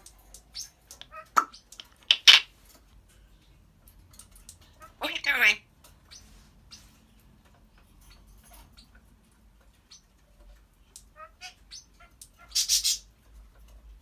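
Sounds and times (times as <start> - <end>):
parrot clicking and chirping: 0.0 - 2.5, 10.9 - 13.0
parrot harsh squawk: 1.0 - 2.5, 12.4 - 13.0.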